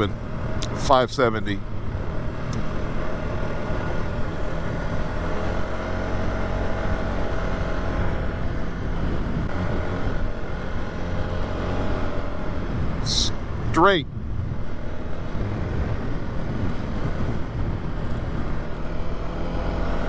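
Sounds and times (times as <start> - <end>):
atv engine running: 0.0 - 20.0.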